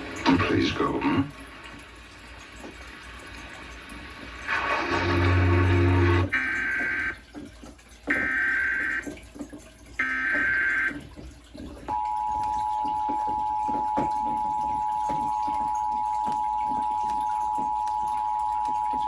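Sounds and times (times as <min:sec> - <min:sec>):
steady two-tone attention signal: 0:11.9 - 0:19.0.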